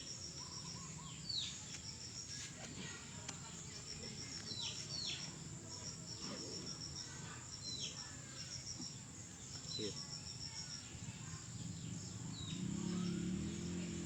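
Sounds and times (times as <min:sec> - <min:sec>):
bird chirping: 0:04.2 - 0:14.0.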